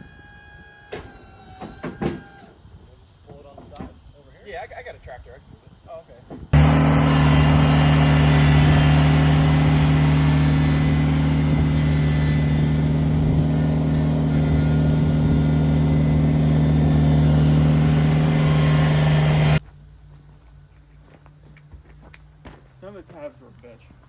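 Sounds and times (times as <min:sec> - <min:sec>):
engine running steadily: 0:06.6 - 0:19.6.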